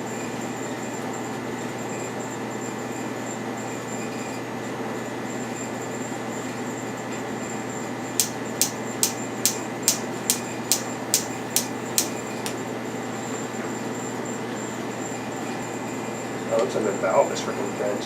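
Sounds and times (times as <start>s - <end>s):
spark ignitor clicking: 8.2s - 12.6s.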